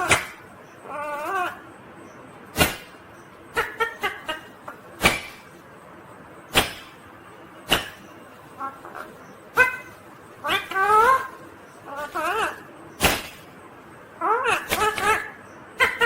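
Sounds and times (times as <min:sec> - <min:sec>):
parakeet chirping: 0:06.5 - 0:16.0.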